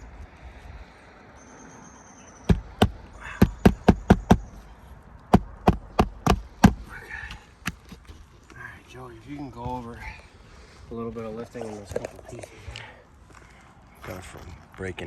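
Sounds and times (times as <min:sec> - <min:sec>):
hammer knocking in nails: 0:02.5 - 0:04.6, 0:05.3 - 0:08.2.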